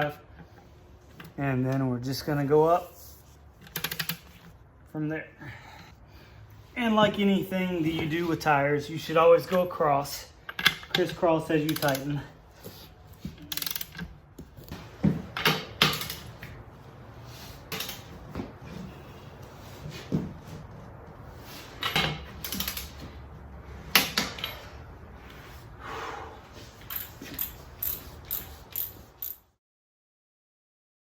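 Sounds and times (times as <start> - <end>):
torque wrench ratcheting clicks: 13.5 - 14.0.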